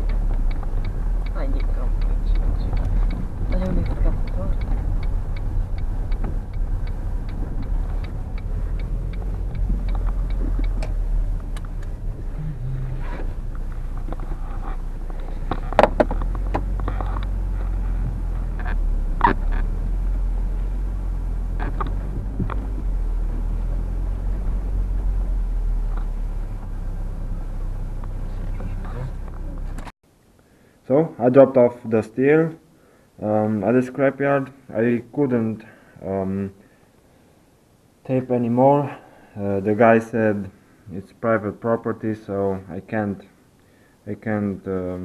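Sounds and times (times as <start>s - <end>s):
regular ticking: 0.0s - 26.7s
car engine and road noise: 0.0s - 30.0s
sharp knocks and clunks: 6.1s - 8.2s, 15.2s - 17.4s.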